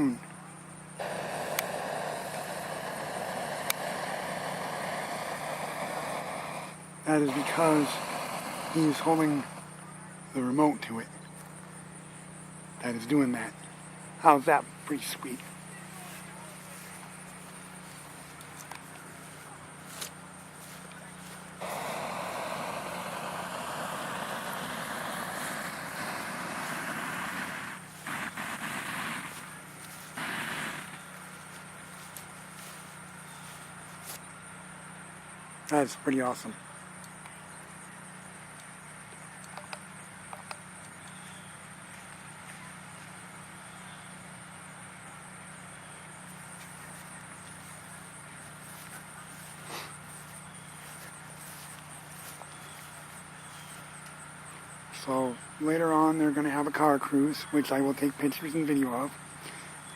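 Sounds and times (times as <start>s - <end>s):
propane burner hissing: 0.8s - 10.9s, 14.2s - 34.2s, 46.3s - 59.9s.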